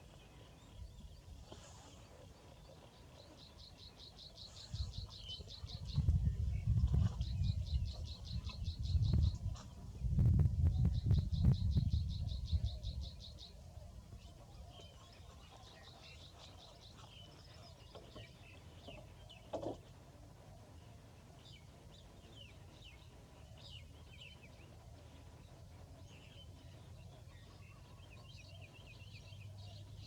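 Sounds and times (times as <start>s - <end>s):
small birds chirping: 0.0s - 30.0s
steady low rumble: 5.9s - 13.1s.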